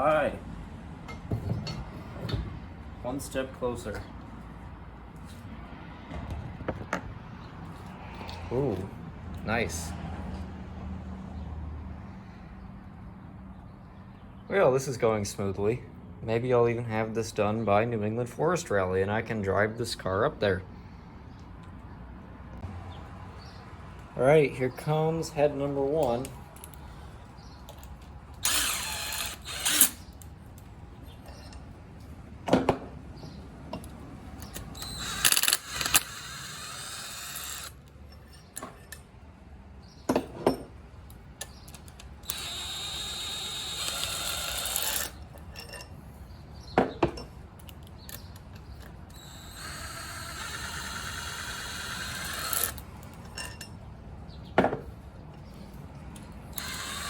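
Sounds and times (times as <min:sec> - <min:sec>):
cordless power tool whirring: 0:28.4 - 0:30.1, 0:34.4 - 0:37.8, 0:41.8 - 0:45.2, 0:49.1 - 0:52.8, 0:56.5 - 0:57.0.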